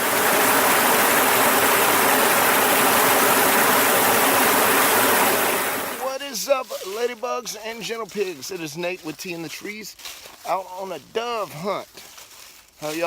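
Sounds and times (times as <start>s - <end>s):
loud rushing hiss: 0.0s - 6.4s.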